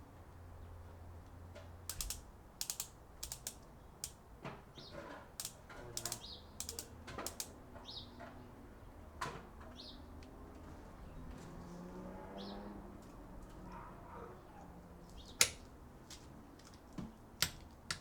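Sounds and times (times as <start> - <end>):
torque wrench clicking: 1.8 - 4.3, 5.4 - 7.6.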